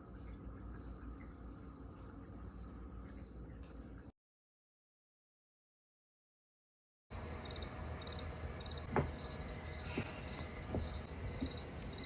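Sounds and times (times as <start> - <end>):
crickets chirping: 0.0 - 3.5, 7.1 - 12.0.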